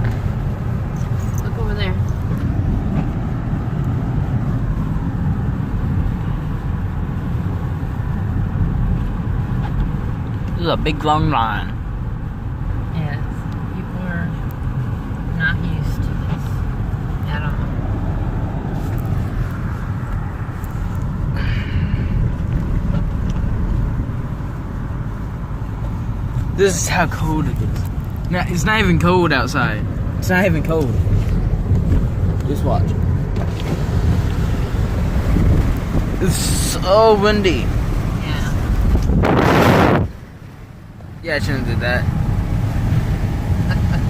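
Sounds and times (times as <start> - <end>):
car interior engine and tyre rumble: 0.0 - 44.0.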